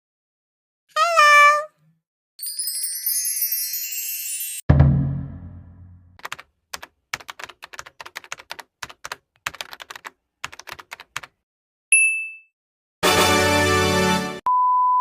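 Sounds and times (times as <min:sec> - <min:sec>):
keyboard typing clicks: 0:06.2 - 0:11.3
short high ding: 0:11.9 - 0:12.5.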